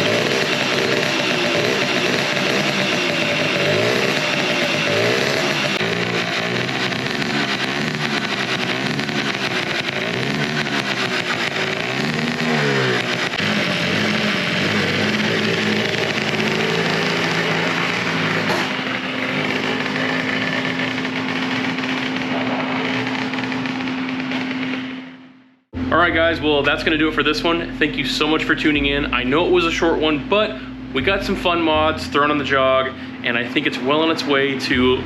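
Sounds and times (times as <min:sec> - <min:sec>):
scooter two-stroke engine revving: 0:00.0 - 0:26.2.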